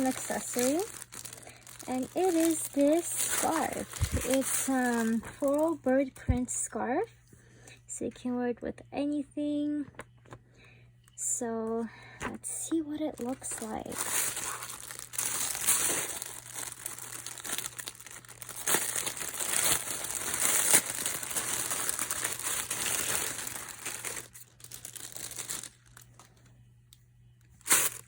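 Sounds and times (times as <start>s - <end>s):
packaging crinkling and rustling: 0.0s - 5.8s, 13.2s - 26.5s, 27.6s - 28.0s.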